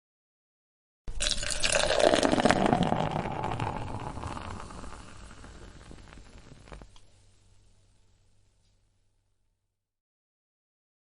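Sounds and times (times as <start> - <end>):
beer pouring into glass: 1.1 - 6.8
beer head fizzing: 1.2 - 6.9.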